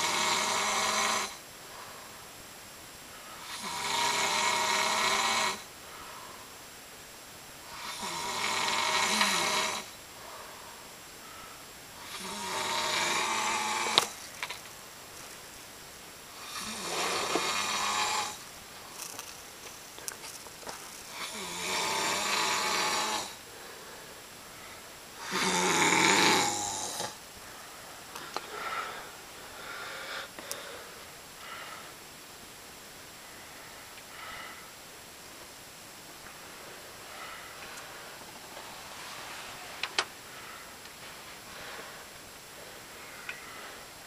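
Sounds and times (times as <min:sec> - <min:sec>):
man snoring loudly: 0:00.0 - 0:01.4, 0:03.4 - 0:05.7, 0:07.6 - 0:10.0, 0:12.0 - 0:14.2, 0:16.3 - 0:18.4, 0:21.1 - 0:23.4, 0:25.2 - 0:27.2
quiet breathing: 0:00.0 - 0:44.0.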